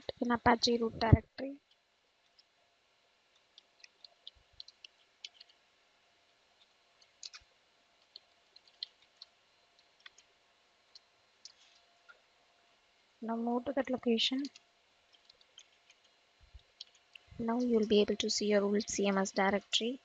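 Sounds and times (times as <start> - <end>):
keyboard typing clicks: 3.6 - 5.6, 16.8 - 17.2.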